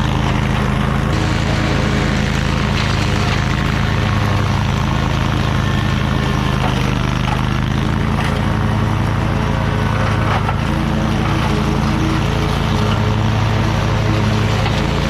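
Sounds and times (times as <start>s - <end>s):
mower engine running: 0.0s - 15.0s.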